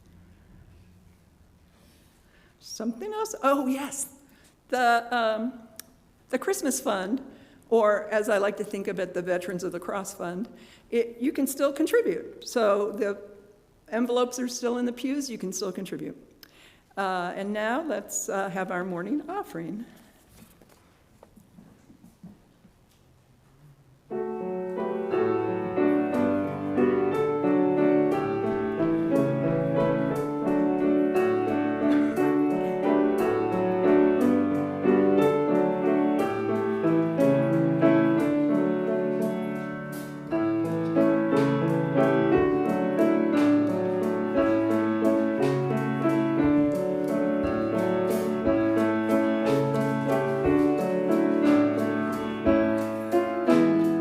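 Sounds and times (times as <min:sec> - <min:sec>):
solo piano music: 0:24.1 - 0:54.0.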